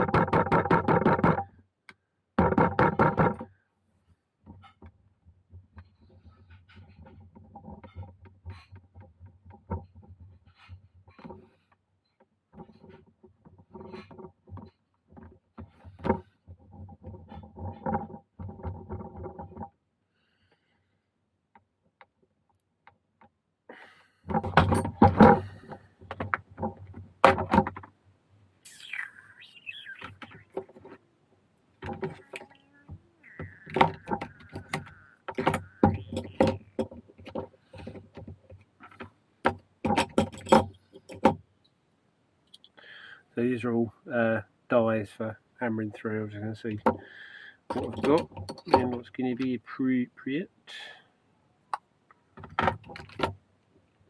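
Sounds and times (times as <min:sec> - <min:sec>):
drawn-out squeak: 0:28.7 - 0:37.0.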